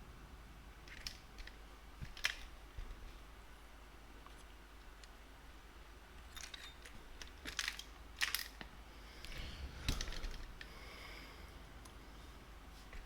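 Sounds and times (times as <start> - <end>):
small metal clicks and clinks: 6.3 - 8.6.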